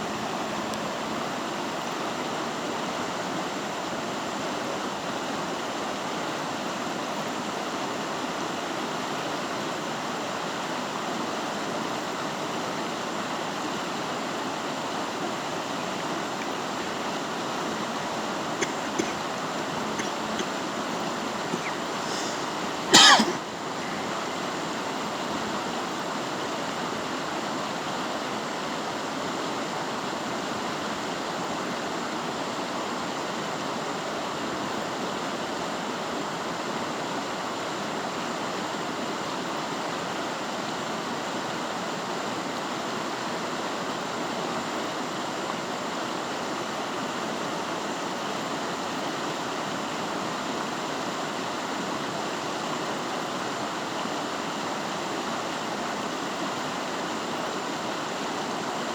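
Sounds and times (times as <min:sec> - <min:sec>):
river rushing over rocks: 0:00.0 - 0:58.9.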